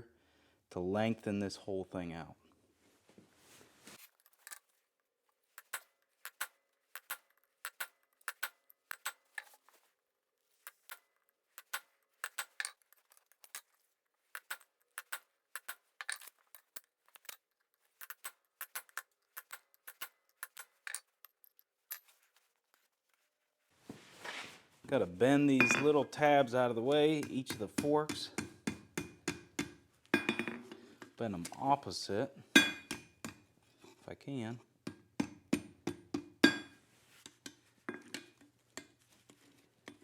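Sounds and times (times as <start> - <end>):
metal tools clinking: 4.0 - 4.8, 5.6 - 9.6, 10.6 - 22.4, 25.5 - 28.4, 30.1 - 31.6, 32.5 - 33.2.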